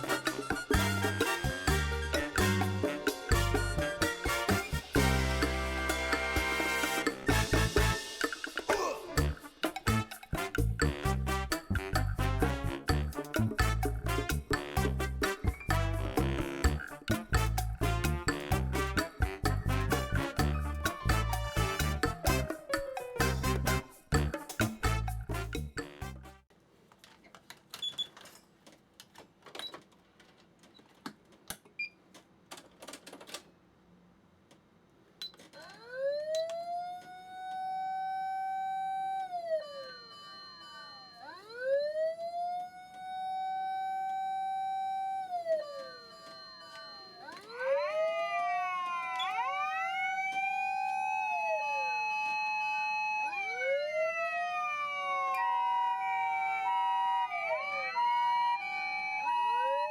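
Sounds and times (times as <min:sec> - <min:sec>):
alternating two-tone siren: 0:35.6 - 0:59.9
siren wail: 0:35.6 - 0:59.9.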